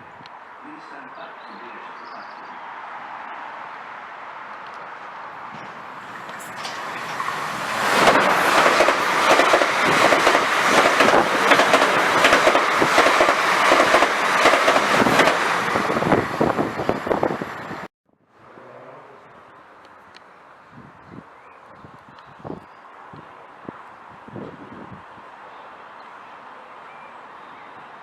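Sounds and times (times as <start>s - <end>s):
train rushing past: 5.4s - 19.4s
wheels clattering over rail joints: 5.5s - 16.4s.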